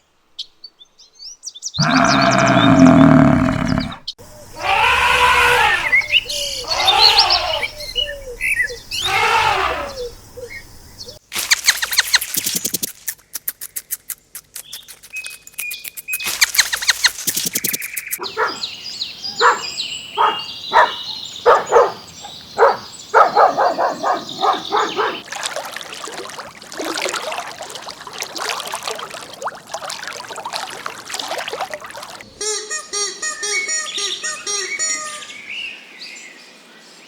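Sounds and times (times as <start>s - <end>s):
birds chirping: 1.8s - 12.7s, 14.5s - 32.4s
dog barking: 18.2s - 18.7s, 19.4s - 25.2s.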